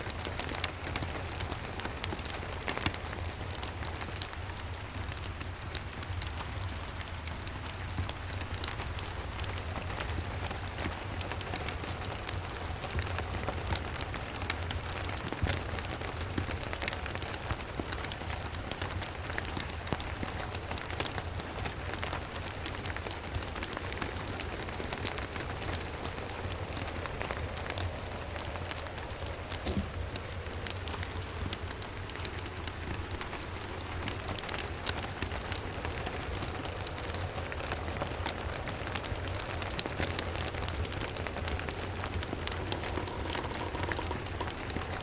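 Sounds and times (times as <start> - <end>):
steady rain: 0.0 - 45.0
fireplace crackling: 22.6 - 45.0.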